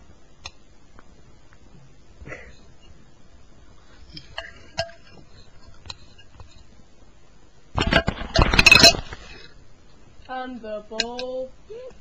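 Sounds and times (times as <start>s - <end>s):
metal spoon clinking bowl: 4.2s - 6.3s, 8.4s - 9.1s, 11.0s - 11.4s.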